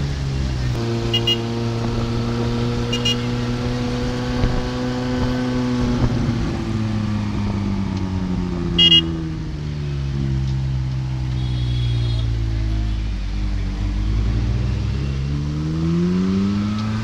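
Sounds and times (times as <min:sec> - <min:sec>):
car engine at low revs: 0:00.0 - 0:11.4
car horn toots: 0:01.1 - 0:01.5, 0:02.8 - 0:03.4, 0:08.8 - 0:09.1, 0:11.3 - 0:12.3.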